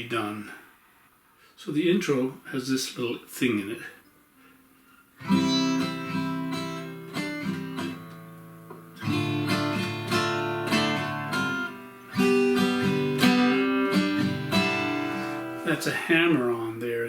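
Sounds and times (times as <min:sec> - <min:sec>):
fingerpicked acoustic guitar: 0:04.4 - 0:17.0.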